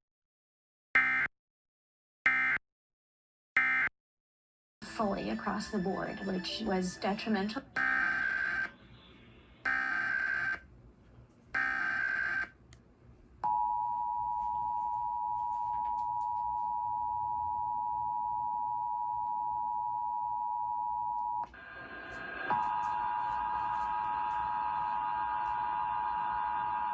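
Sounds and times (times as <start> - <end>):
two-tone alert signal: 7.8 - 8.7
screeching digital data bursts: 7.8 - 8.8, 9.6 - 10.6, 22.5 - 26.9.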